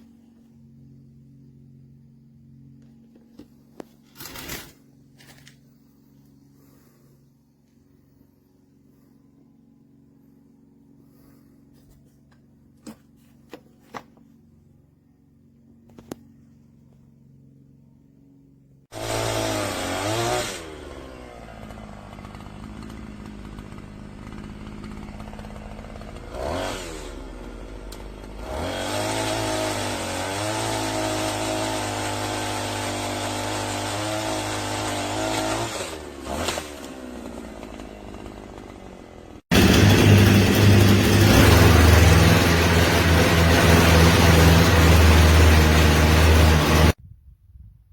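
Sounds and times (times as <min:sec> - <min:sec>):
petrol engine revving: 0:19.0 - 0:47.0.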